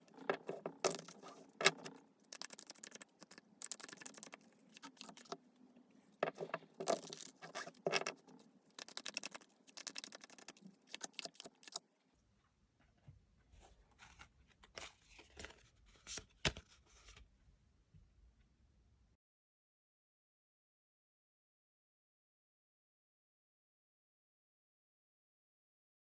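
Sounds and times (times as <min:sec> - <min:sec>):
cards shuffling: 0:00.1 - 0:05.4, 0:06.2 - 0:11.8.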